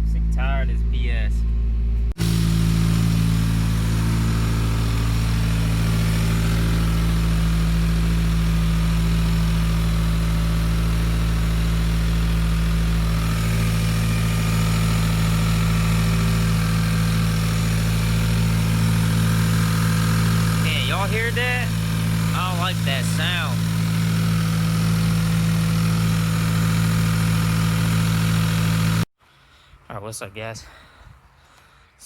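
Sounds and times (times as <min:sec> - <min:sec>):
car engine idling and misfiring: 0:00.0 - 0:29.1.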